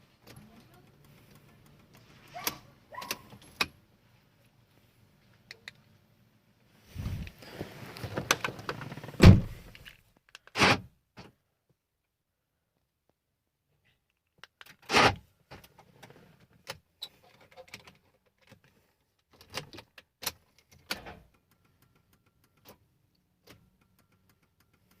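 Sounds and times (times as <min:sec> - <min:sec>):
short thump: 0:09.2 - 0:09.7.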